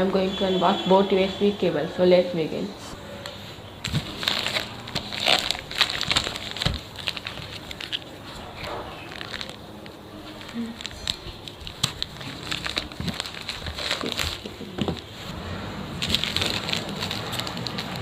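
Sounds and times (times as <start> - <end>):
packaging crinkling and rustling: 3.8 - 18.0.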